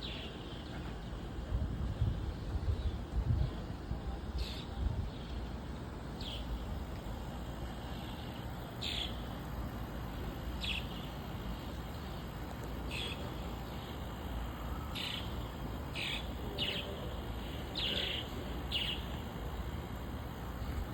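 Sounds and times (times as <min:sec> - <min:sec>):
swallows calling: 0:14.8 - 0:17.0, 0:17.6 - 0:19.1.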